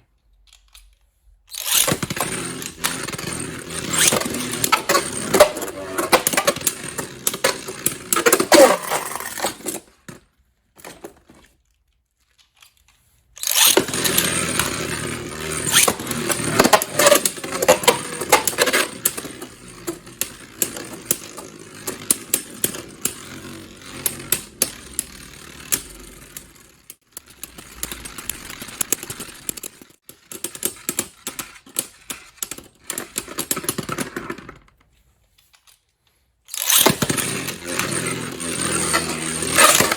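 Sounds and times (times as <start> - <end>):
spinning tops whirring: 1.5 - 9.8, 13.4 - 33.7, 36.5 - 39.9
sharp clicks of colliding tops: 1.6 - 9.8, 13.4 - 23.2, 36.6 - 39.9.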